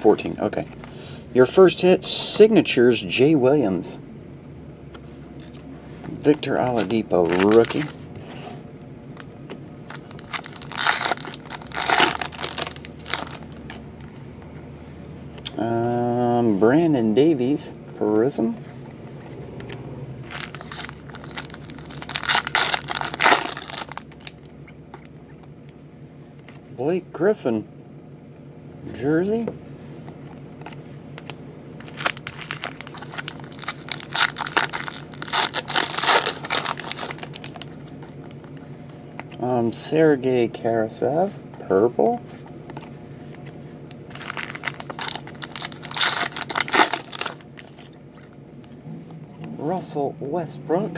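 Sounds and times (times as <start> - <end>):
wrapper crinkling: 7.1 - 8.0, 9.9 - 13.6, 20.3 - 25.1, 31.8 - 38.6, 44.1 - 48.0.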